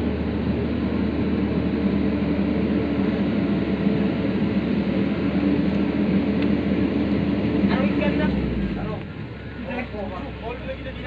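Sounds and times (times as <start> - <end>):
engine running steadily: 0.0 - 11.0.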